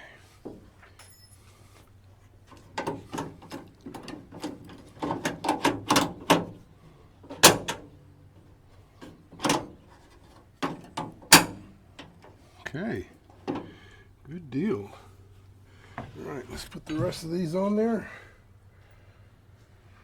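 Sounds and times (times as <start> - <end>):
car door latch clicks and knocks: 7.3 - 7.9.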